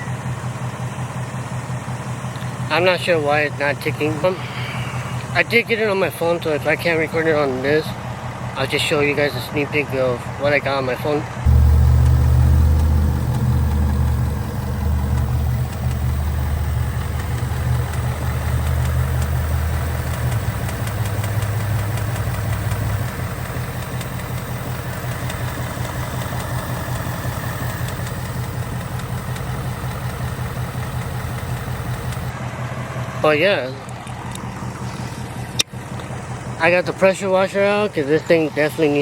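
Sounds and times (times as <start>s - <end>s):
fast engine ticking: 11.5s - 32.4s
car engine idling: 11.5s - 32.5s.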